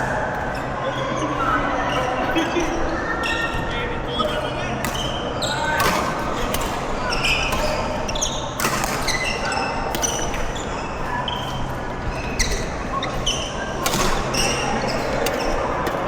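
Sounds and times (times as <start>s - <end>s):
shoes squeaking on court floor: 0.4s - 16.0s
racket striking shuttlecock: 13.8s - 14.6s.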